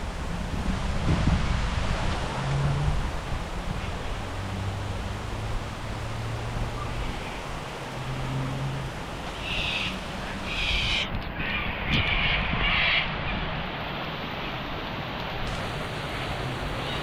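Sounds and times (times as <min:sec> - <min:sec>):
rain hiss: 0:00.0 - 0:17.0
bird cawing: 0:09.3 - 0:13.1.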